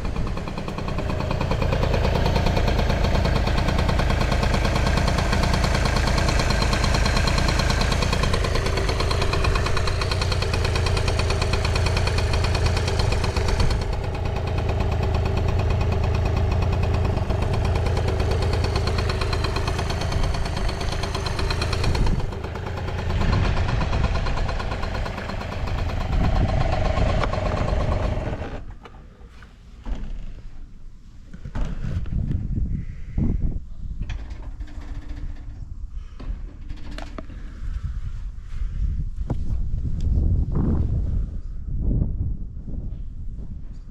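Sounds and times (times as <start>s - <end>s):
scooter engine running: 0.0s - 28.8s.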